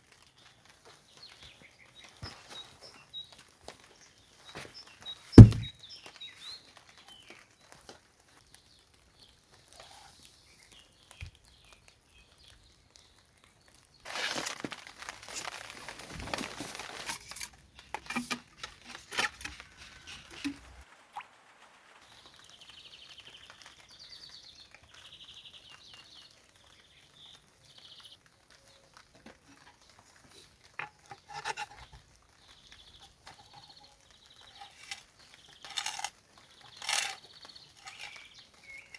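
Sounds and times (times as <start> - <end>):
hands rustling and knocking material: 5.4 - 5.7
bird singing faint trills: 32.4 - 38.9.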